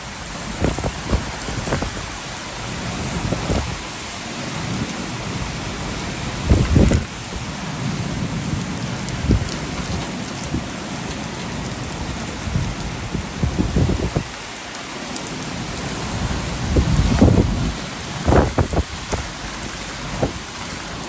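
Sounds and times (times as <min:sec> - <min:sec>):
heavy rain falling: 0:00.0 - 0:21.0
thunder rumbling: 0:06.4 - 0:07.1.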